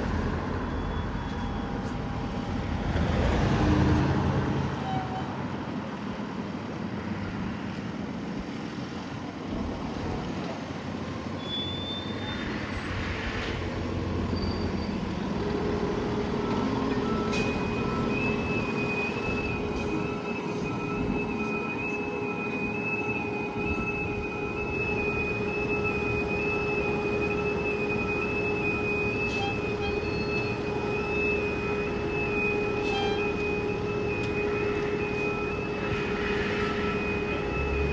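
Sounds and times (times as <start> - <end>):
heavy truck engine and road noise: 0.0 - 37.9
high tone with repeating beep: 16.6 - 37.9.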